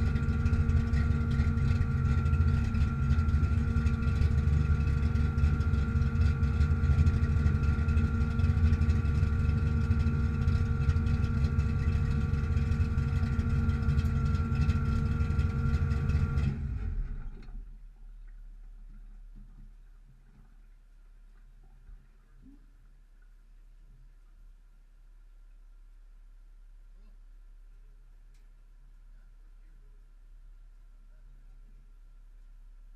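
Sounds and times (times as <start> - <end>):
car engine idling: 0.0 - 17.8.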